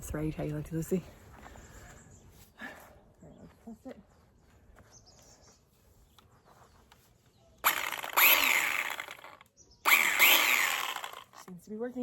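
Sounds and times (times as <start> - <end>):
electric chainsaw running: 7.6 - 11.4.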